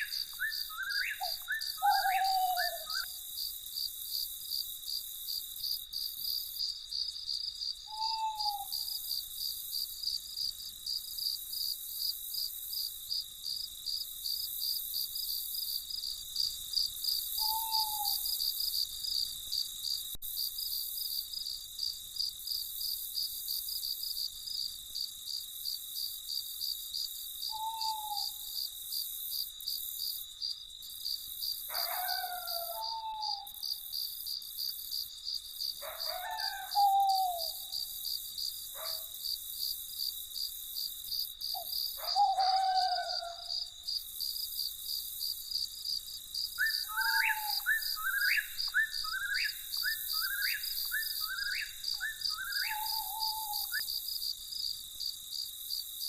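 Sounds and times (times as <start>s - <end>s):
night bird hooting: 0.0s - 3.2s, 7.9s - 9.1s, 17.3s - 18.5s, 27.5s - 28.6s, 31.7s - 33.7s, 35.8s - 37.7s, 41.6s - 43.7s, 46.6s - 53.9s
crickets chirping: 0.0s - 56.0s.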